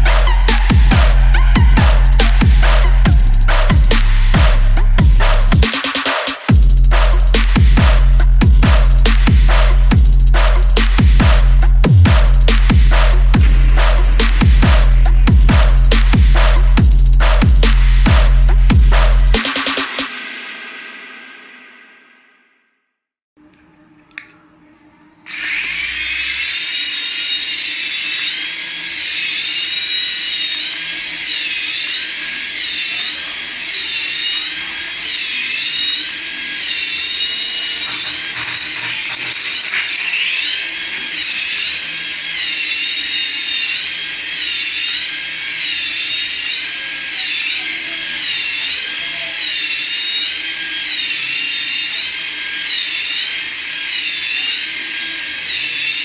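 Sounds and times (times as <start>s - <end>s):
remote-control toy whine: 0.0s - 4.6s, 25.3s - 56.0s.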